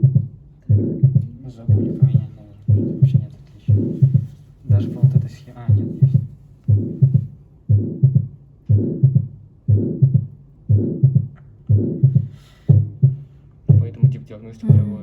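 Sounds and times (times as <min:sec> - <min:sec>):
heart sounds with murmur: 0:00.0 - 0:15.0.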